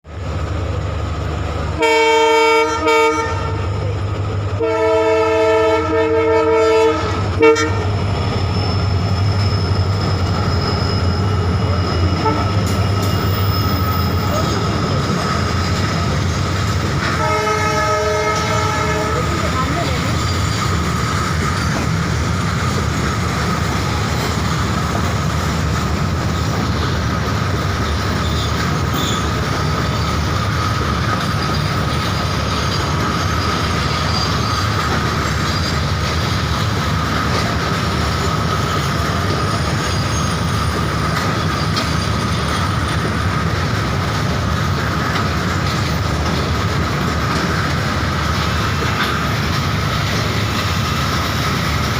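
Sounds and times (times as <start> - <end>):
train wheels rumbling on rails: 0.0 - 51.9
high wheel squeal: 7.8 - 16.6, 19.2 - 22.1, 27.8 - 36.0, 37.9 - 43.0.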